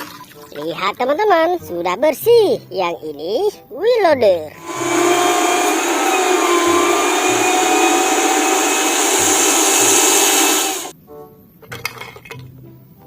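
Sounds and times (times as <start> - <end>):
small electric motor running: 4.6 - 10.9.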